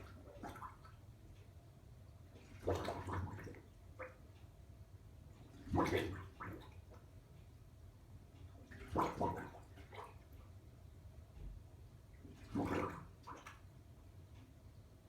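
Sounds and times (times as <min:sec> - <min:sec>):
water bubbling and gurgling: 0:00.0 - 0:01.0, 0:02.4 - 0:04.2, 0:05.5 - 0:07.0, 0:08.6 - 0:10.2, 0:12.2 - 0:13.6.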